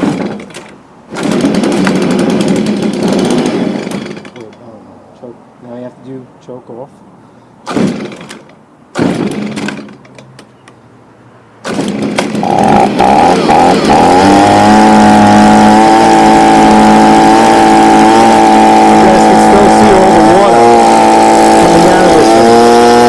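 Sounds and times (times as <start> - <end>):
leaf blower engine running: 0.0 - 4.6, 11.7 - 23.0
starter cord pulls: 0.0 - 4.6, 11.7 - 23.0.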